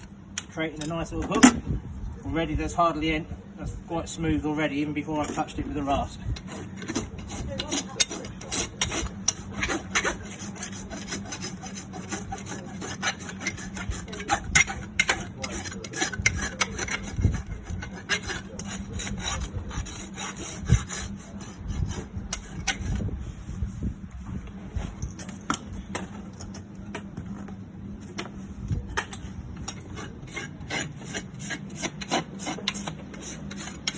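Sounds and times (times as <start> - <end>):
rasp scraping hoof: 6.4 - 23.1, 29.7 - 33.9.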